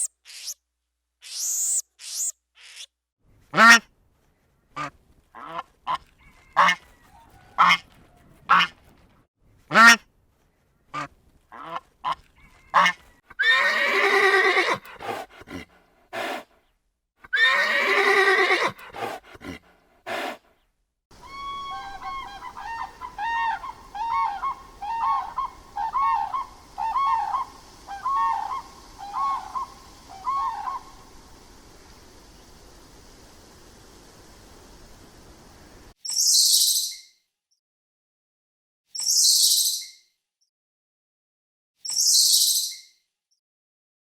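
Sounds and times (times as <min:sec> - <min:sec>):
short repeated animal calls: 0:00.0 - 0:00.6
harsh animal calls: 0:21.2 - 0:30.9
faint hiss: 0:21.2 - 0:36.0.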